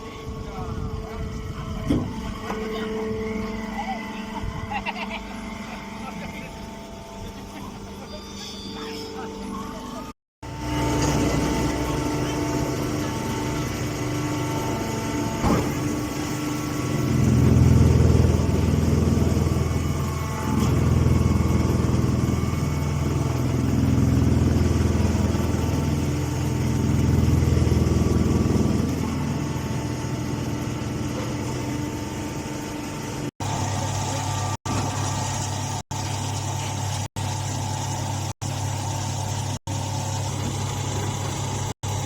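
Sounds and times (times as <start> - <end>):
baler engine hum: 10.5 - 36.9.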